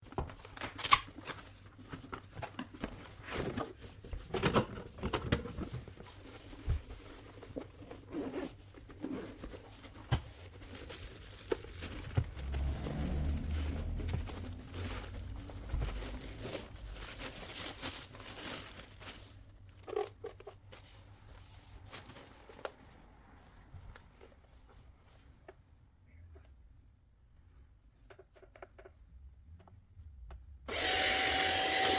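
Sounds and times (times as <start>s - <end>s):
zipping and tearing packaging: 10.4s - 19.9s
dull low rumble: 11.8s - 17.6s.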